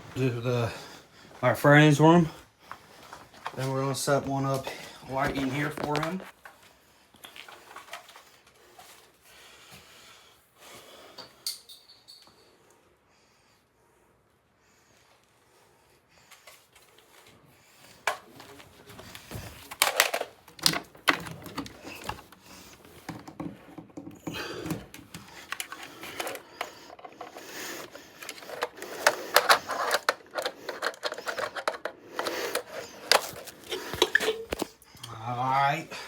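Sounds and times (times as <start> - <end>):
plastic clicking and rattling: 19.0 - 34.8.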